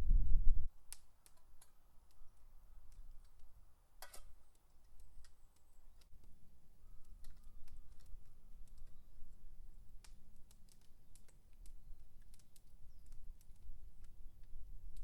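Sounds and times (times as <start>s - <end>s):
low rumble: 0.0s - 0.7s
campfire crackling: 0.7s - 15.0s.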